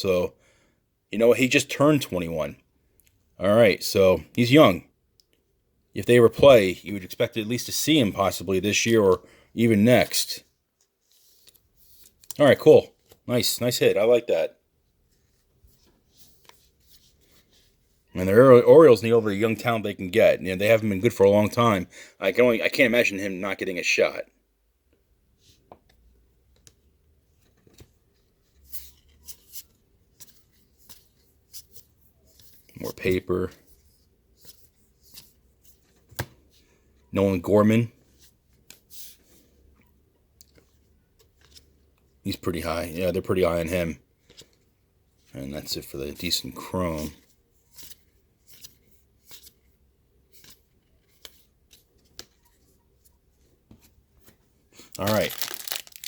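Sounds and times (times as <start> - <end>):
trading cards swishing and clicking: 53.7 - 56.0.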